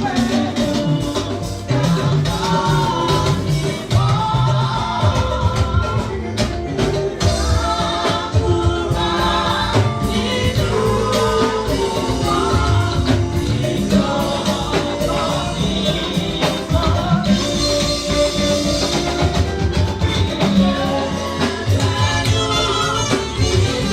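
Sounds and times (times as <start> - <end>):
choir singing a hymn: 0.0 - 23.9
drums and percussion beat: 0.0 - 23.9.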